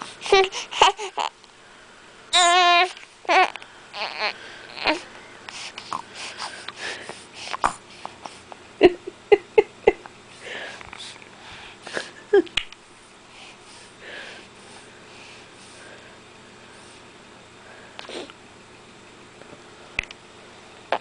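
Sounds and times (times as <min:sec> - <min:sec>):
baby snorting through congested nose: 0:04.9 - 0:08.5.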